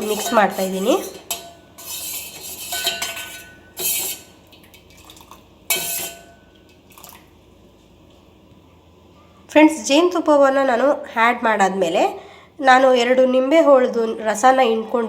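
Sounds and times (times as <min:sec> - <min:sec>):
spoon clinking on pot: 0:00.0 - 0:04.2, 0:05.7 - 0:06.7
spoon scraping cooking pot: 0:00.0 - 0:04.4, 0:05.7 - 0:06.4.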